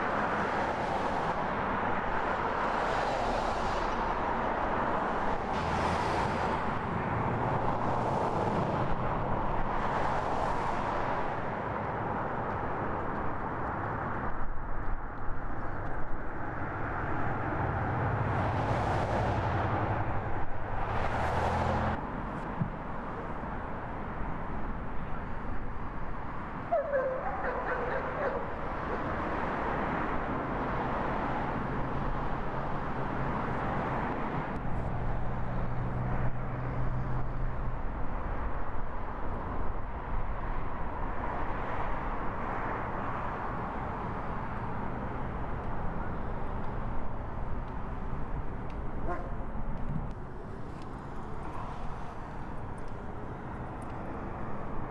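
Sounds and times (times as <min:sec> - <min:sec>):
loud outdoor noise: 0:00.0 - 0:54.9
tree-removal machinery engine hum: 0:43.6 - 0:54.9.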